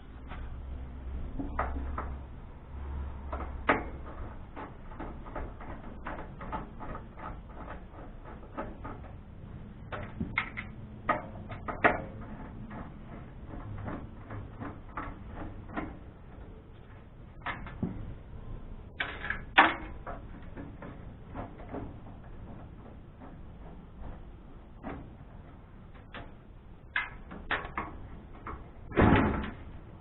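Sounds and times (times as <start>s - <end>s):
hand tools clicking and tapping: 3.2s - 18.0s
metal clanks: 18.9s - 30.0s.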